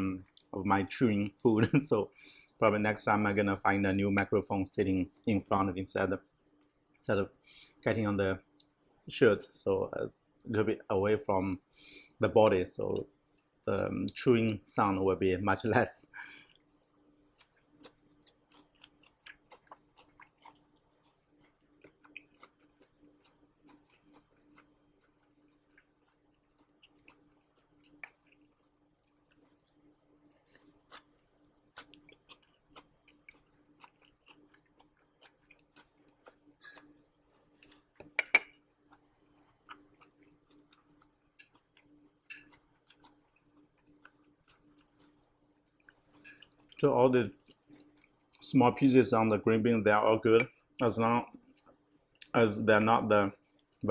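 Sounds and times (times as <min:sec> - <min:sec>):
chewing crunchy food: 0:16.1 - 0:48.6, 0:50.5 - 0:53.9.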